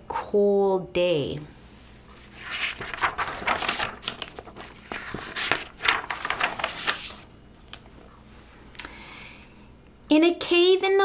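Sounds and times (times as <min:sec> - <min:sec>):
paper rustling and crinkling: 0:02.0 - 0:08.1.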